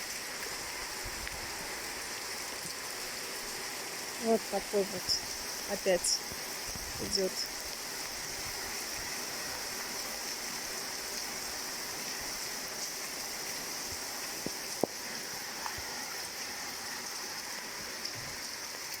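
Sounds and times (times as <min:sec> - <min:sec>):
steady rain falling: 0:00.0 - 0:19.0
single raindrops striking close: 0:11.1 - 0:16.6.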